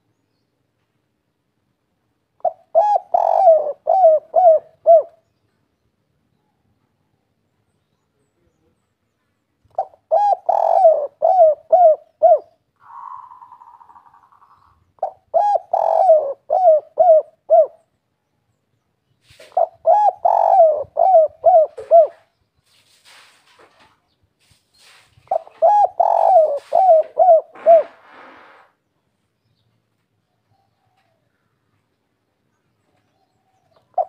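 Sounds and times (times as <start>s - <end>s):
dove cooing: 2.4s - 5.2s, 9.7s - 17.9s, 19.3s - 22.3s, 25.3s - 28.6s, 33.1s - 34.0s.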